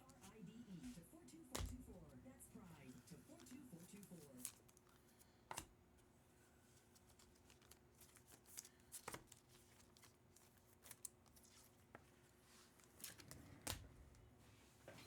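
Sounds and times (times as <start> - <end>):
cards rustling and sliding: 6.7 - 13.8.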